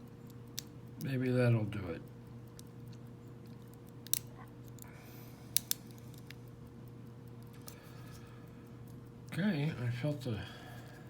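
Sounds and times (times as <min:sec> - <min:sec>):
steady low hum: 0:00.0 - 0:11.0
lock pick clicking in padlock: 0:04.0 - 0:04.3.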